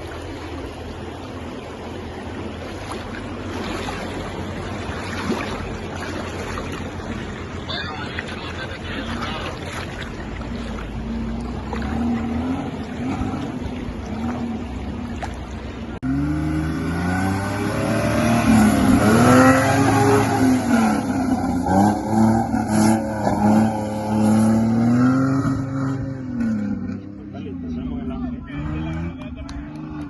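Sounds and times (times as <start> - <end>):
engine revving under load: 10.4 - 15.3, 16.0 - 30.0.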